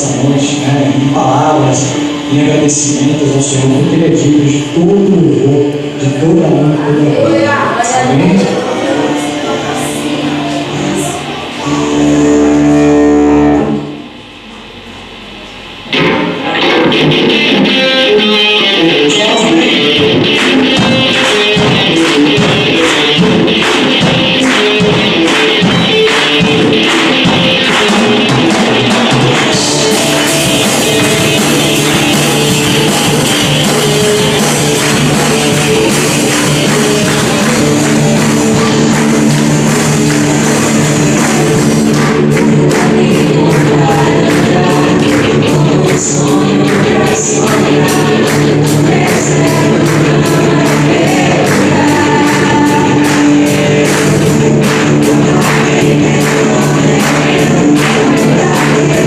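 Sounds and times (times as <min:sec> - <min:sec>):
live band playing: 0:00.0 - 0:14.5, 0:15.1 - 0:59.0
drum beat: 0:16.0 - 0:59.0
voices singing: 0:17.5 - 0:59.0.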